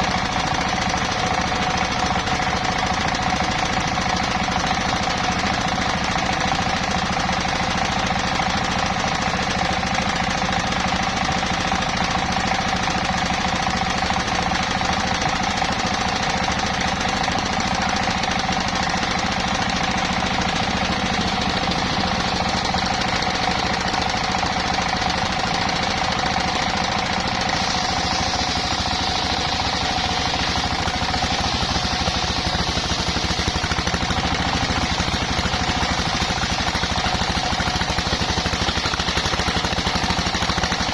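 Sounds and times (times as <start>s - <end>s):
circular sawmill engine knocking: 0.0s - 40.9s
saw whine: 17.3s - 40.9s.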